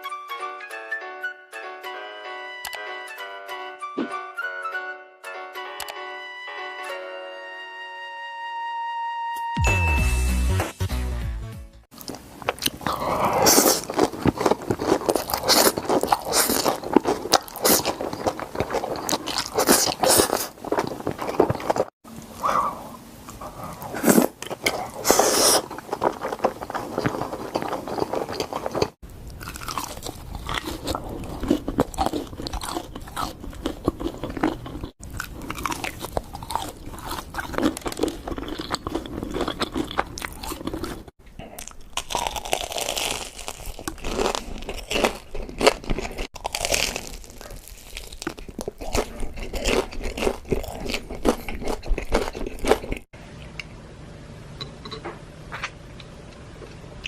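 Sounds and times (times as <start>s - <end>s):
crunchy bites and chewing: 12.0s - 22.7s, 23.3s - 53.1s.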